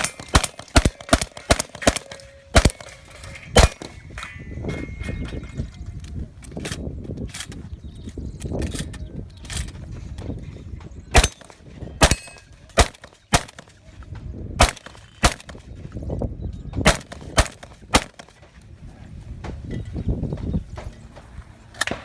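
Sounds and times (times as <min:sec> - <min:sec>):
shotgun shots: 0:00.0 - 0:03.0, 0:03.6 - 0:03.9, 0:11.1 - 0:13.7, 0:14.6 - 0:15.6, 0:16.8 - 0:18.4.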